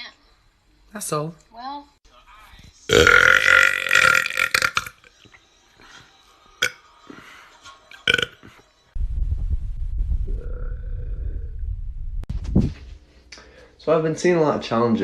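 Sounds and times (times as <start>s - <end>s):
person belching loudly: 2.9s - 5.1s, 6.6s - 6.8s, 8.0s - 8.5s
low rumble: 9.0s - 13.0s.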